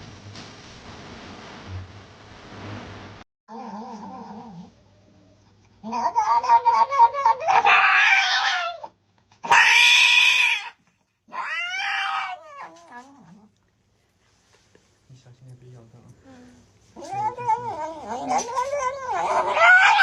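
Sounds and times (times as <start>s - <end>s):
cat yowling: 5.8s - 13.5s, 17.0s - 20.0s.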